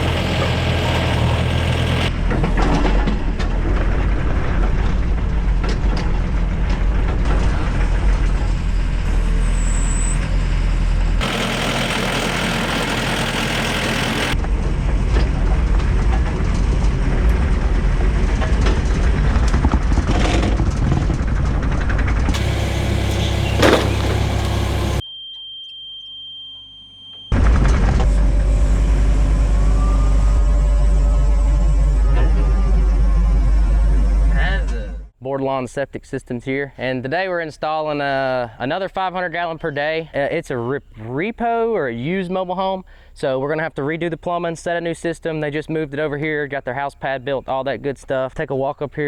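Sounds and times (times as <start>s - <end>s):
heavy engine rumbling: 0.0s - 25.0s, 27.4s - 35.2s.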